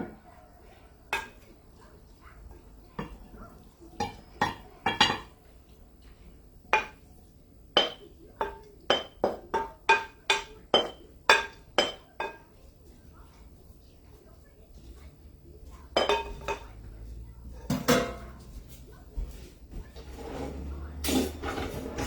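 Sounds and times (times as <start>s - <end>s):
utensil clinking against cookware: 0.0s - 13.4s, 15.7s - 18.6s, 20.6s - 22.0s.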